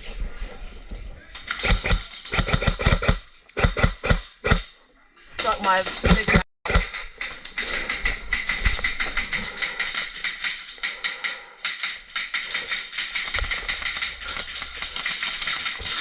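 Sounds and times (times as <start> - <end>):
airsoft guns firing: 1.4 - 4.6, 5.4 - 16.0.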